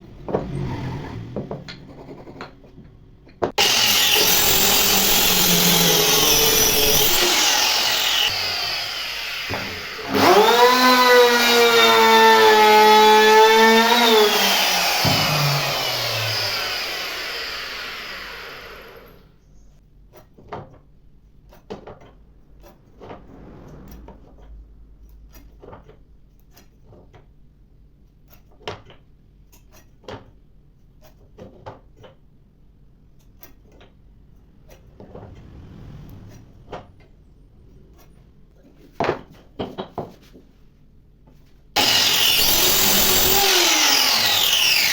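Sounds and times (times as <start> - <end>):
power tool working on wood: 3.6 - 19.2, 41.8 - 44.9
motor whine: 41.8 - 44.9.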